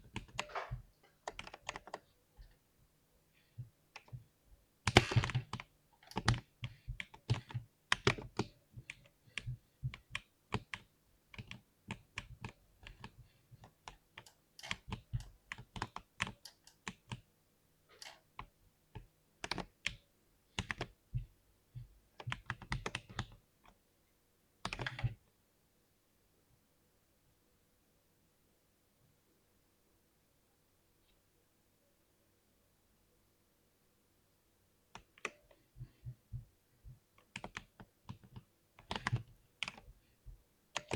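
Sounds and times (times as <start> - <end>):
keyboard keystroke clicks: 37.2 - 39.8.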